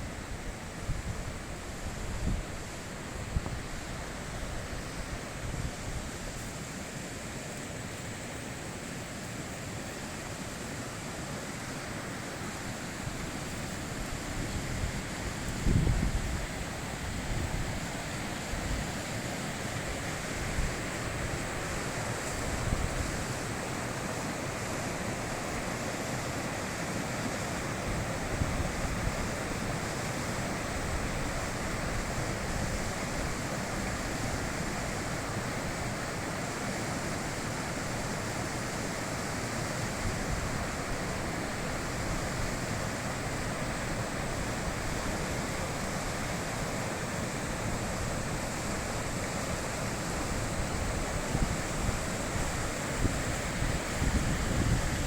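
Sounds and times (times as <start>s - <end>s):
river rushing over rocks: 0.0s - 55.0s
wind buffeting microphone: 14.0s - 17.8s, 50.5s - 55.0s.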